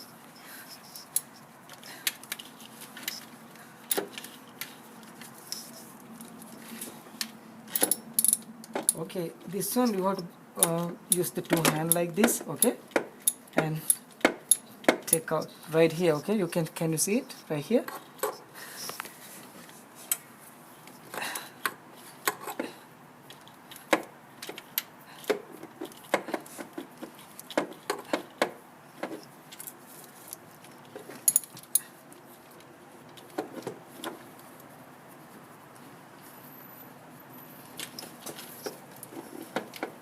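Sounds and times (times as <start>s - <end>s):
metallic clicks of hand tools: 10.6s - 15.3s.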